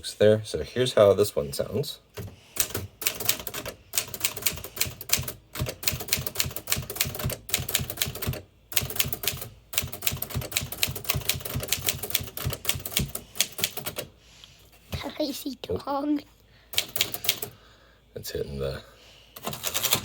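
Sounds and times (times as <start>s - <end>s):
manual typewriter typing: 2.2s - 14.1s, 16.8s - 17.6s, 19.4s - 20.0s.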